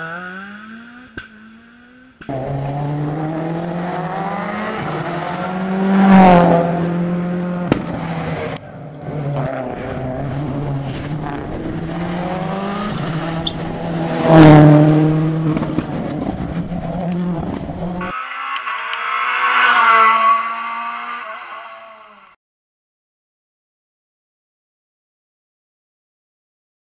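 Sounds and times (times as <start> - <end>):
rally cars passing at full throttle: 0.0 - 22.4
tyre squeal: 13.4 - 13.8.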